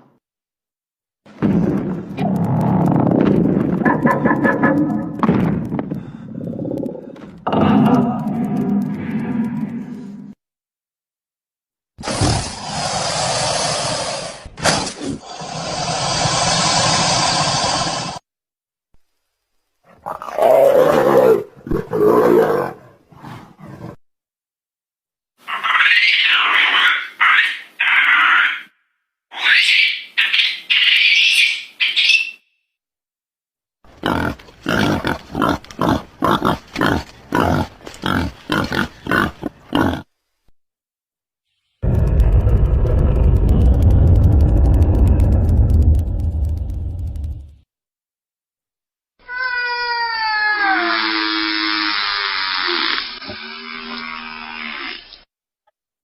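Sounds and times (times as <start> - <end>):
monster roaring: 6.1 - 10.0, 12.0 - 18.2, 41.8 - 47.1
animal grunting: 34.0 - 40.1.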